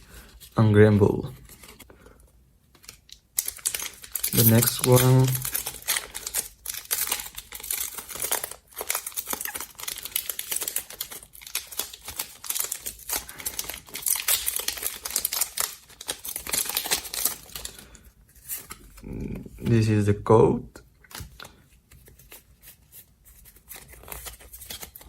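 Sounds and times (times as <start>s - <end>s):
foil wrapper tearing and crackling: 2.8s - 17.9s.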